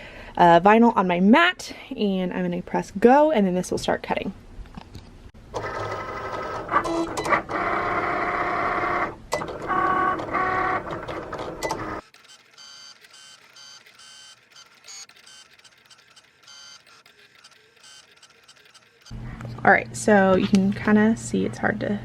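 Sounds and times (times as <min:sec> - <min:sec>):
cutting machine motors whining: 0:05.6 - 0:19.2
machine clicks: 0:13.0 - 0:19.1.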